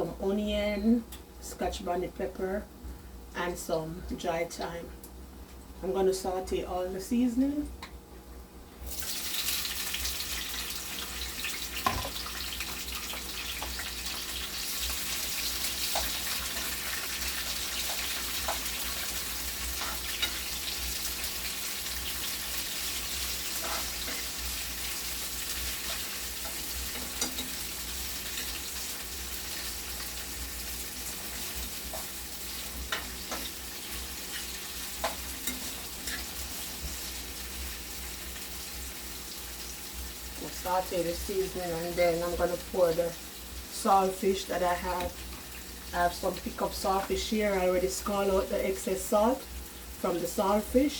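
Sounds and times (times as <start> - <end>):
vegetables sizzling in hot oil: 8.8 - 50.9
spoon stirring and clicking on pan: 15.7 - 21.4, 23.2 - 24.6, 25.6 - 28.8, 32.8 - 33.6, 34.3 - 36.3.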